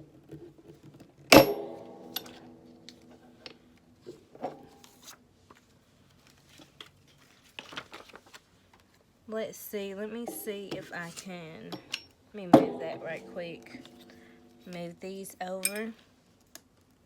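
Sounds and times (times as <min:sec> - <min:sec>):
metal part knocking and ringing: 0:01.3 - 0:02.7.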